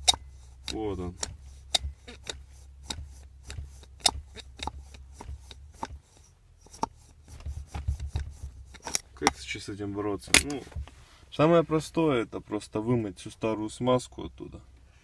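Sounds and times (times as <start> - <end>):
fan motor parts clicking and knocking: 0.0 - 11.0
low steady hum: 0.0 - 15.0.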